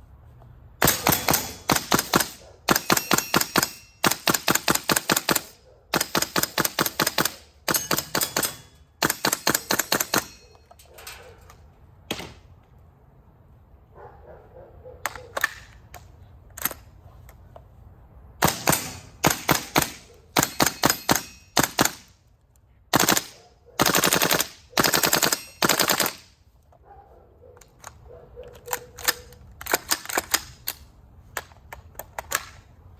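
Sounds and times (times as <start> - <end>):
airsoft rifle firing bursts: 0.8 - 10.4, 18.4 - 22.1, 22.9 - 26.3.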